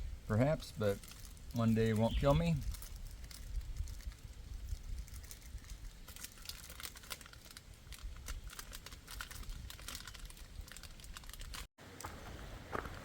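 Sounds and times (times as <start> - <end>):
snack packaging crinkling: 0.9 - 11.7
wind rumble on microphone: 1.3 - 6.1, 7.6 - 11.6.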